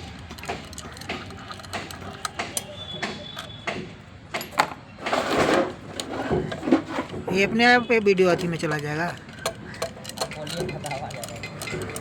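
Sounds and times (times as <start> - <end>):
metallic clicks of tools: 0.0 - 3.6, 8.0 - 12.0.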